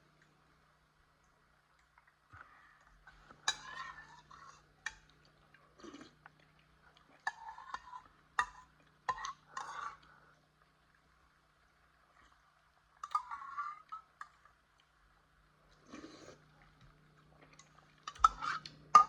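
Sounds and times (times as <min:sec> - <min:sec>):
chewing: 0:01.8 - 0:10.4, 0:15.7 - 0:19.0.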